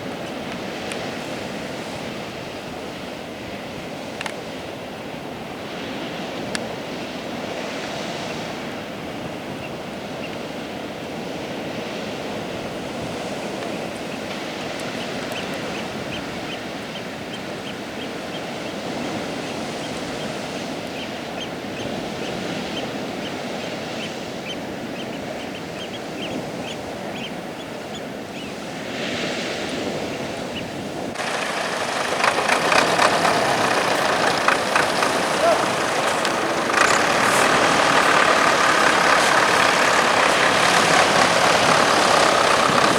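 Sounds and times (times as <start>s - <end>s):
surf breaking on beach: 31.1s - 42.9s.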